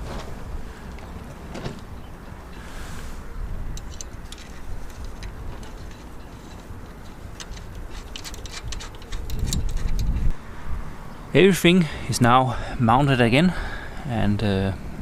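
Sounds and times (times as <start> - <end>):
metal screws and washers clicking: 3.7 - 10.3.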